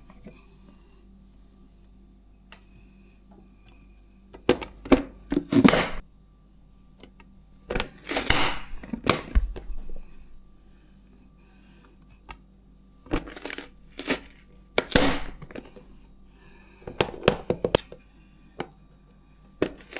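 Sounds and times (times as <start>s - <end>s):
vegetables being chopped: 5.4s - 6.0s, 7.8s - 9.3s, 13.3s - 15.5s.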